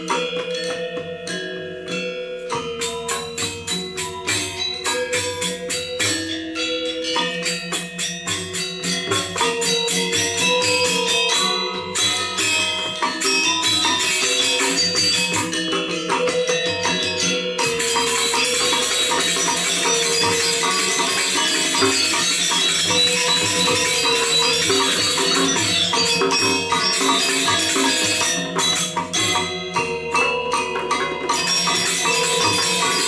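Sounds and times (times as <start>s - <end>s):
gamelan metallophones playing: 0.0s - 33.0s
crash cymbals shimmering: 7.3s - 33.0s.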